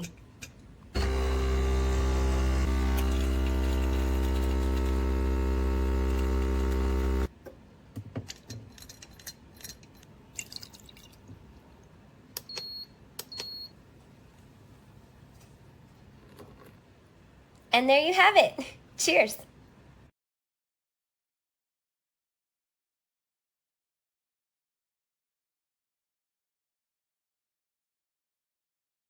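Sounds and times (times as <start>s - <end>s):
espresso machine pump humming: 1.0s - 7.3s.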